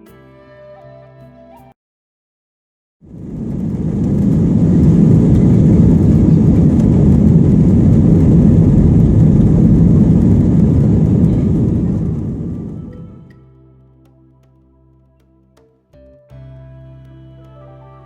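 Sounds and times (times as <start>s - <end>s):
low engine rumble: 3.1s - 15.4s.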